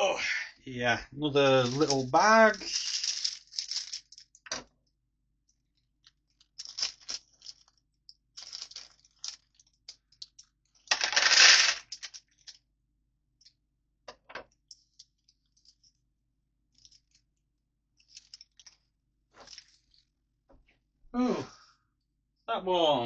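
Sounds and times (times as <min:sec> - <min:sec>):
bag of pieces rattling: 0:01.6 - 0:04.4, 0:06.4 - 0:12.6, 0:19.4 - 0:20.0
plastic pieces clicking: 0:01.6 - 0:04.7, 0:06.0 - 0:12.6, 0:18.0 - 0:18.8.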